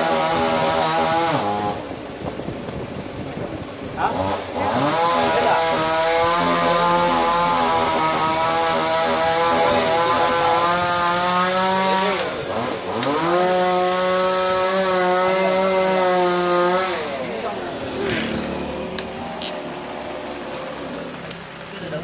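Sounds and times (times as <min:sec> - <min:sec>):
small petrol engine revving: 0:00.0 - 0:22.0.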